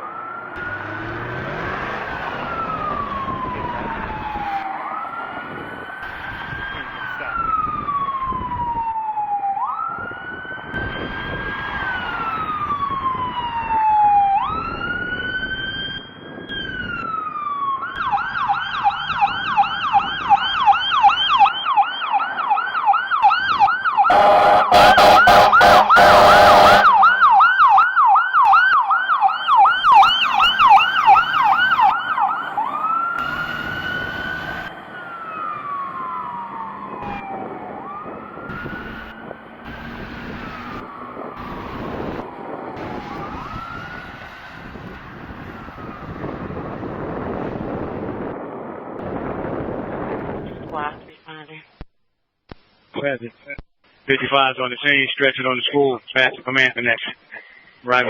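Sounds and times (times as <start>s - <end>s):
fire engine siren: 0.0s - 50.5s
air horn blasts: 24.1s - 27.3s.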